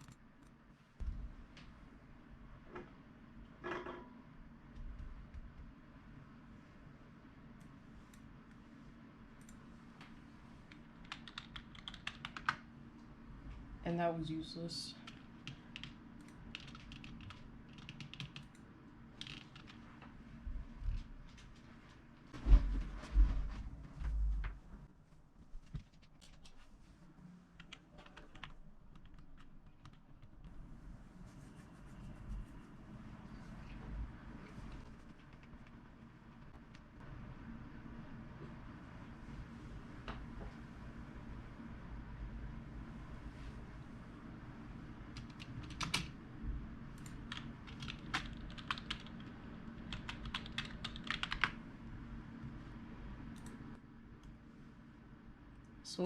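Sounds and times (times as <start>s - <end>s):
steady low hum: 0.0s - 56.0s
keyboard keys tapping: 11.0s - 12.6s, 15.1s - 18.6s, 19.2s - 19.8s, 47.0s - 49.3s, 49.9s - 51.6s.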